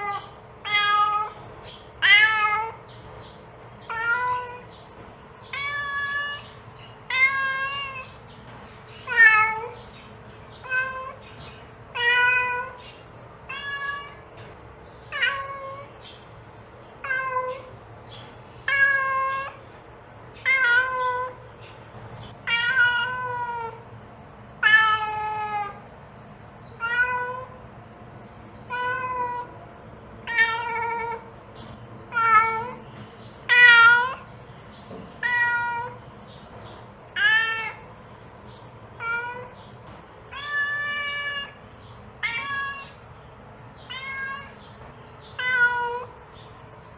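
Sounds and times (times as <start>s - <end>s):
cat meowing: 0.0s - 1.4s, 2.0s - 2.8s, 3.8s - 4.7s, 5.4s - 8.2s, 9.0s - 9.8s, 10.6s - 11.3s, 11.9s - 12.8s, 13.4s - 14.4s, 15.1s - 16.0s, 17.0s - 17.7s, 18.6s - 19.7s, 20.4s - 21.5s, 22.4s - 23.8s, 24.6s - 25.8s, 26.7s - 27.6s, 28.6s - 29.6s, 30.2s - 31.4s, 32.0s - 34.3s, 35.2s - 36.0s, 37.1s - 38.0s, 39.0s - 39.6s, 40.3s - 43.0s, 43.8s - 46.3s.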